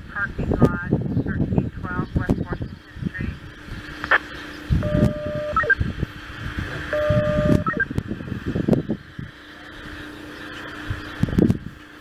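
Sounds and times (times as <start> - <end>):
low rumbling noise: 0.0 - 12.0
steady low hum: 0.0 - 12.0
radio scanner beeps and chirps: 0.4 - 5.9, 6.8 - 8.0.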